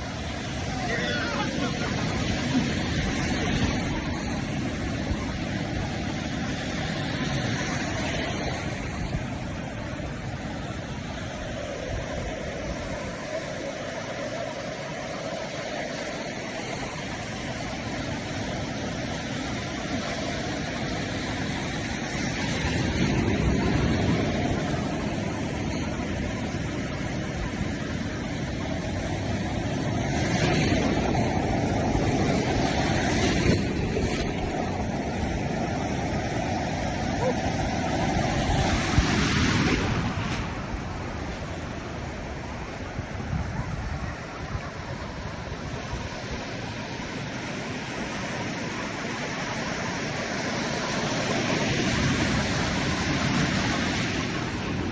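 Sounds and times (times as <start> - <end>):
ocean surf washing in: 0.0 - 54.9
wind on microphone: 0.0 - 54.9.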